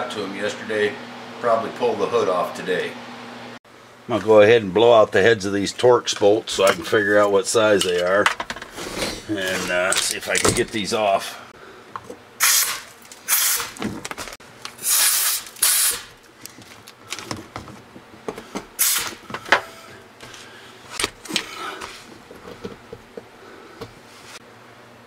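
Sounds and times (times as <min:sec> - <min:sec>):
tool handling clicks and knocks: 0:06.1 - 0:08.8, 0:09.4 - 0:10.8
compressed air hissing bursts: 0:12.4 - 0:13.8, 0:14.8 - 0:16.1, 0:18.8 - 0:19.2.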